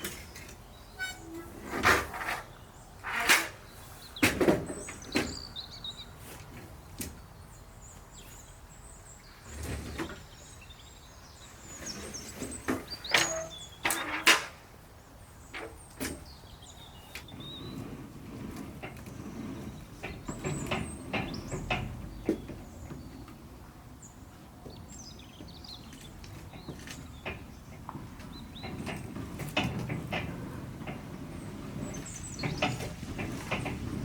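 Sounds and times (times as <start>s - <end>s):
metal scrapes and knocks: 11.8s - 14.6s
birds chirping faintly: 14.9s - 34.0s.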